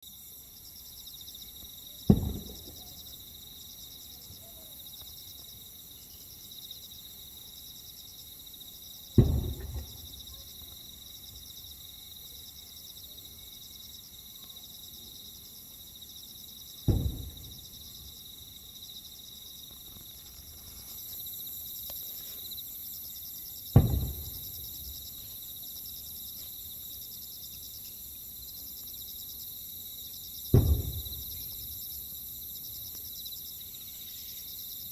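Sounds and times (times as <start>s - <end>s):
insect chirring: 0.1s - 34.9s
firework shells bursting: 2.1s - 3.0s, 9.2s - 10.3s, 16.9s - 17.8s, 23.7s - 25.1s, 30.5s - 31.8s.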